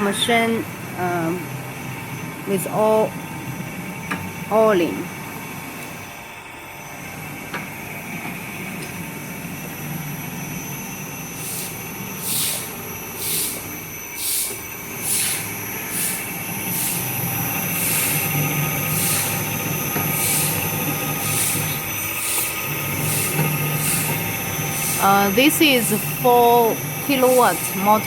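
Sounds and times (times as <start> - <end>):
knife grinding machine running: 0.0 - 28.0
short hissing bursts: 11.4 - 17.1.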